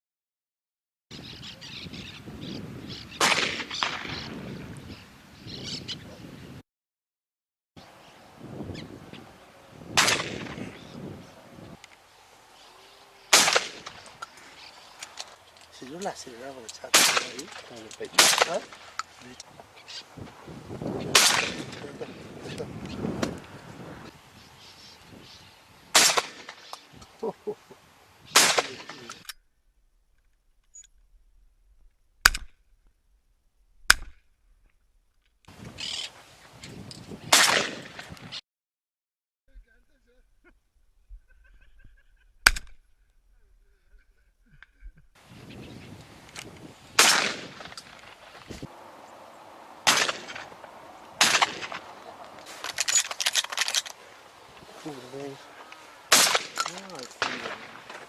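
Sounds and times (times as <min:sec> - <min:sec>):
gunshots: 0:03.2 - 0:04.2, 0:10.0 - 0:10.7, 0:13.3 - 0:14.1, 0:16.9 - 0:18.9, 0:21.1 - 0:22.0, 0:25.9 - 0:26.6, 0:28.4 - 0:29.2, 0:37.3 - 0:38.0, 0:47.0 - 0:47.8, 0:49.8 - 0:50.6, 0:51.2 - 0:52.0, 0:56.1 - 0:58.0.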